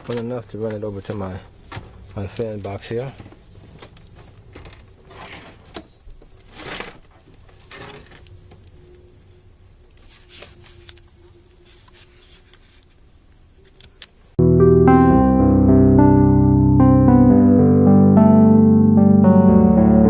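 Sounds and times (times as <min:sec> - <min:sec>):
cable rustling and scuffing: 0:01.0 - 0:08.2.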